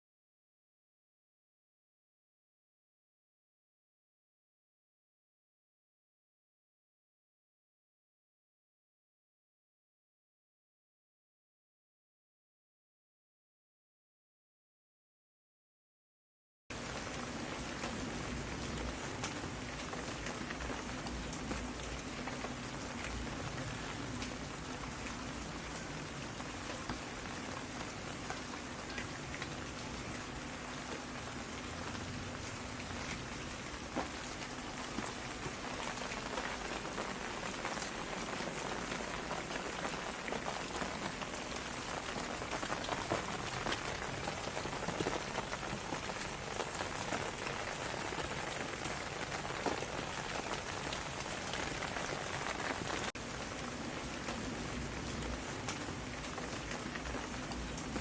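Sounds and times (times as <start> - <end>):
rain falling: 16.7 - 58.0.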